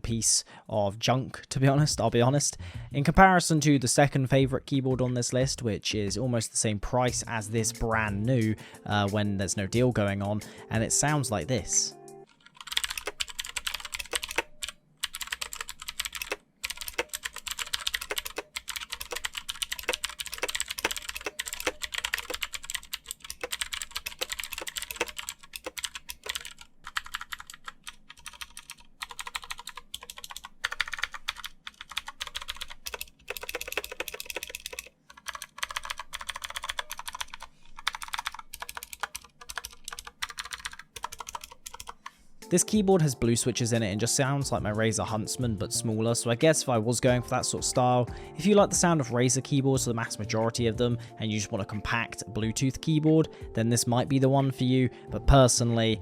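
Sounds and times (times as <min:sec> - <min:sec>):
mechanical keyboard typing: 0:12.3 - 0:42.1.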